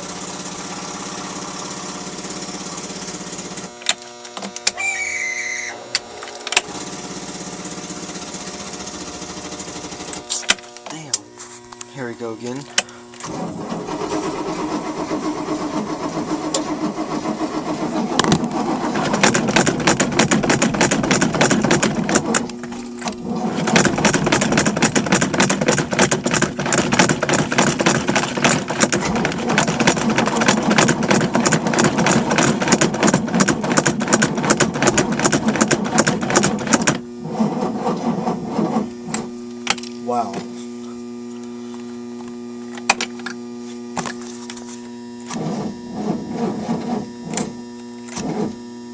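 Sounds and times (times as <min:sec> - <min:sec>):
electrical hum: 0:00.0 - 0:48.9
boat engine cranking: 0:13.2 - 0:39.3.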